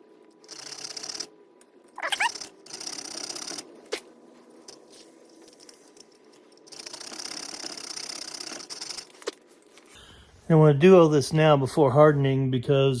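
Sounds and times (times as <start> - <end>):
short squeak: 2.0 - 2.4.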